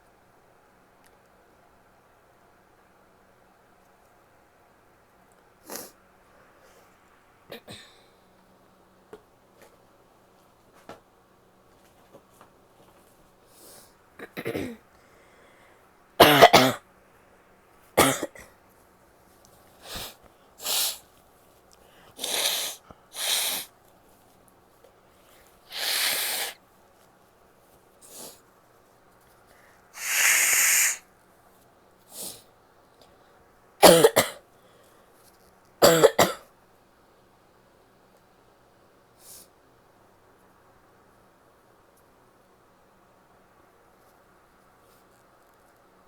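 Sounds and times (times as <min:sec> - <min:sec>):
sniffs: 0:05.6 - 0:07.0, 0:13.5 - 0:14.0, 0:19.7 - 0:21.1, 0:21.7 - 0:23.8, 0:25.2 - 0:26.6, 0:28.0 - 0:28.5, 0:29.4 - 0:31.1, 0:32.0 - 0:33.4, 0:39.2 - 0:39.6
woman coughing: 0:14.2 - 0:14.8, 0:16.2 - 0:16.8, 0:18.0 - 0:18.5, 0:33.8 - 0:34.4, 0:35.8 - 0:36.5
nose blowing: 0:22.2 - 0:23.7, 0:25.7 - 0:26.6, 0:30.0 - 0:31.0.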